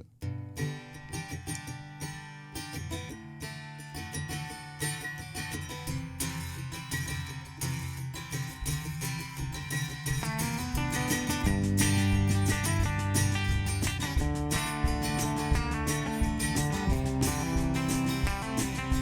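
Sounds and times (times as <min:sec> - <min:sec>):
guitar picking: 0:00.0 - 0:19.0
low bass line: 0:10.8 - 0:19.0.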